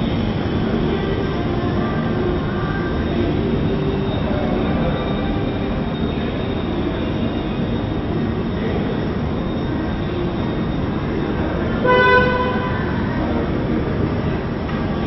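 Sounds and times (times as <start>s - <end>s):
rumbling traffic noise: 0.0s - 15.0s
car horn toot: 11.8s - 13.0s.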